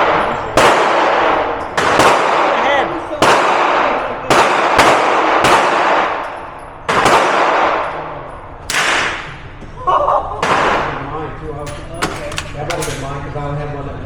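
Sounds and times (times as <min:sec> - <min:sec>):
gunshots echoing indoors: 0:00.0 - 0:13.2.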